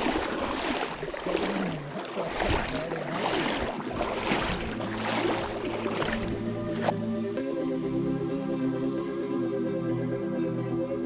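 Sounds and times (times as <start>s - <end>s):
people wading through river water: 0.0s - 7.0s.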